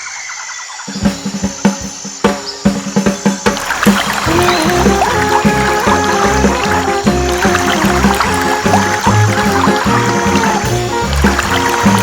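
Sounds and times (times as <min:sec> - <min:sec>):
drum beat: 0:01.0 - 0:12.0
light high melody: 0:03.6 - 0:12.0.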